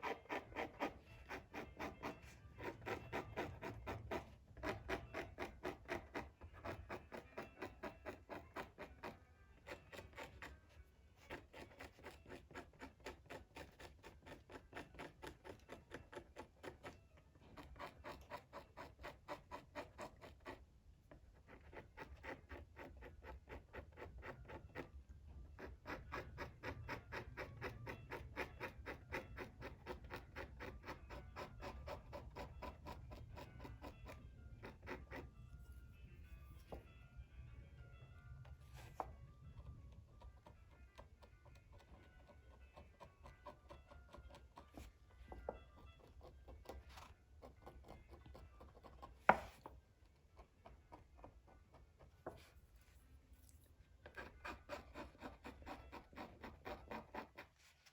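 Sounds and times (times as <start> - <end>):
parchment being scraped: 0.0 - 24.9, 25.5 - 35.8, 52.2 - 57.9.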